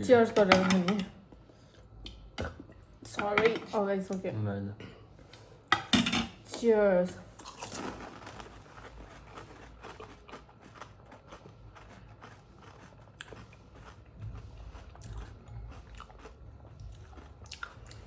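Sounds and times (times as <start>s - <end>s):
crisp shells crunching while chewing: 7.4s - 18.0s.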